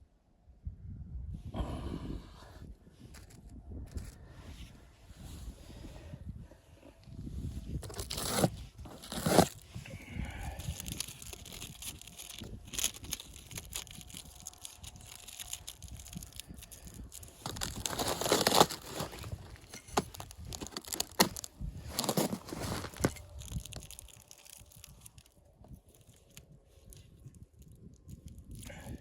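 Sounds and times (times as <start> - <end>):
rustling and crunching: 7.7 - 28.7.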